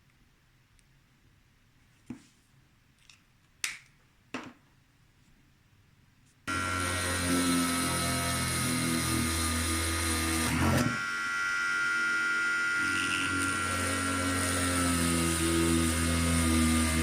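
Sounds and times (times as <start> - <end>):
electric rotary tool whining: 6.5 - 17.0.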